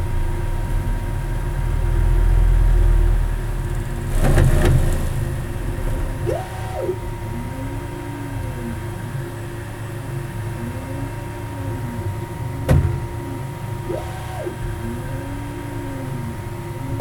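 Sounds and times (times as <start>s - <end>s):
steady hum: 0.0s - 17.0s
stepper motors whining: 3.4s - 9.8s, 10.4s - 17.0s.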